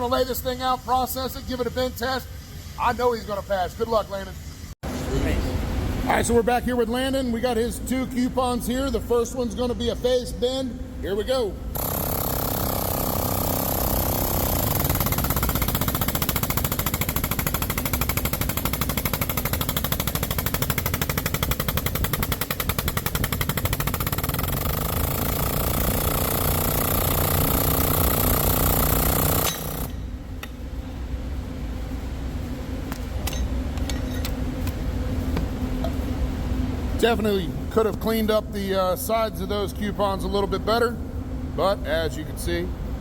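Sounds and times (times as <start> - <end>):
low machine hum: 0.0 - 43.0
machine pulsing rapidly: 11.7 - 30.1.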